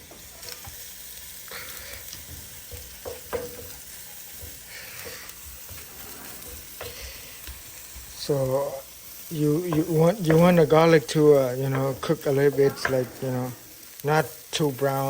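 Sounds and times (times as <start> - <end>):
garlic and meat sizzling in pan: 0.0 - 15.0
utensil scraping and tapping pan: 2.1 - 8.1, 9.6 - 13.5.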